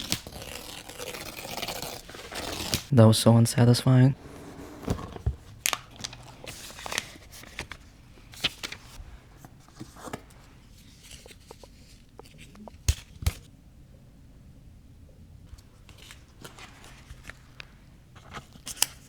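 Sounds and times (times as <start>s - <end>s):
cardboard packaging rustling: 0.0s - 2.9s, 4.4s - 13.5s.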